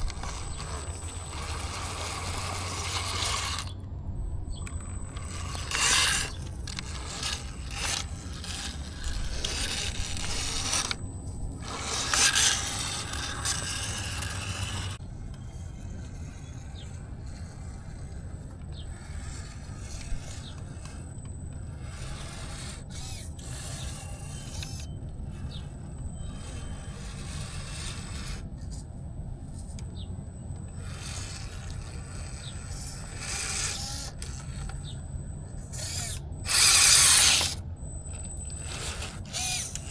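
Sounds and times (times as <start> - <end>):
toy car drivetrain whirring: 0.0 - 3.9, 4.5 - 39.9
tyres scraping over rough ground: 0.0 - 3.9, 4.5 - 39.9.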